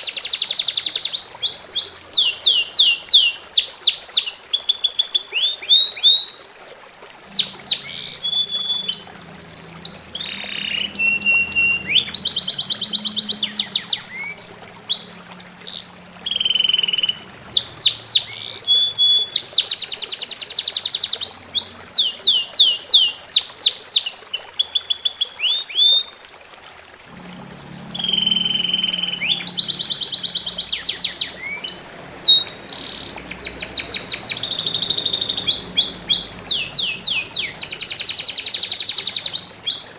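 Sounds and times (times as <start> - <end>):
songbird singing: 0.0 - 6.4, 7.2 - 26.2, 27.1 - 39.9.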